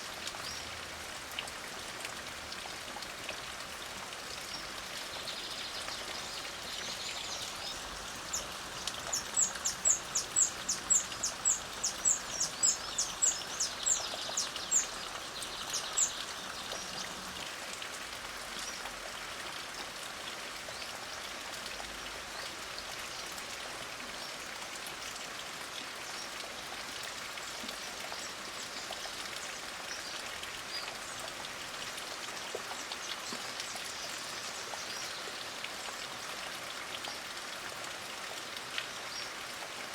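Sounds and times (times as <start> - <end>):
light rain hissing: 3.6 - 18.8.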